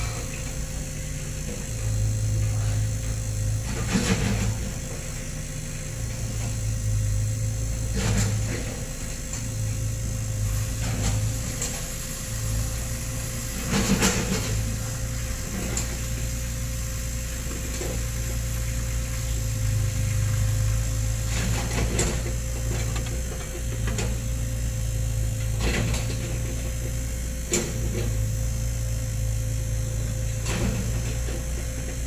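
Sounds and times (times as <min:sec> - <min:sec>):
sharp machine knocks: 0:00.0 - 0:11.9
excavator diesel engine running: 0:00.0 - 0:32.0.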